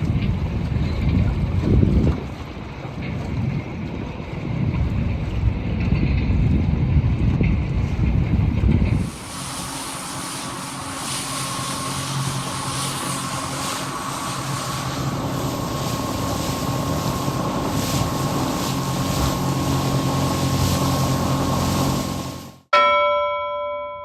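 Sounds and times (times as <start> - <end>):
wind noise on microphone: 0.0 - 22.6
boat motor running: 0.0 - 22.7
thin steady whine: 8.8 - 22.6.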